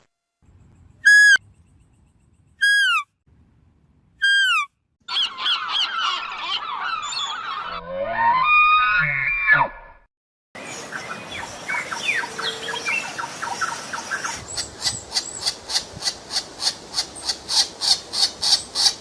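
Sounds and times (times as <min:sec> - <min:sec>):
birds chirping: 0:04.2 - 0:07.8, 0:10.6 - 0:19.0.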